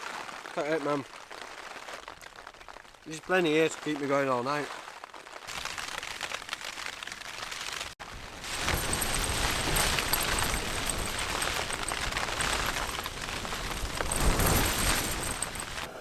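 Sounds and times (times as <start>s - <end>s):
wind buffeting tent: 8.0s - 16.0s.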